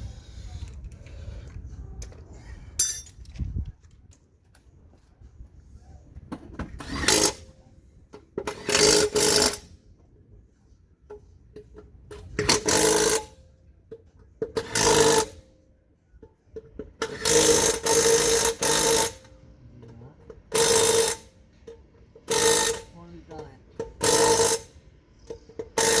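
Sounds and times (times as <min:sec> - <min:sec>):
impact wrench running: 0:12.3 - 0:13.4, 0:14.5 - 0:15.4, 0:17.0 - 0:19.3, 0:20.5 - 0:24.8, 0:25.5 - 0:26.0.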